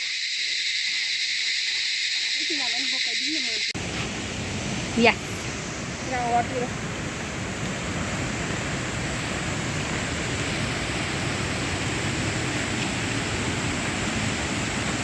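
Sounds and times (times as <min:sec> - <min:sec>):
stream waterfall rushing: 0:03.8 - 0:15.0.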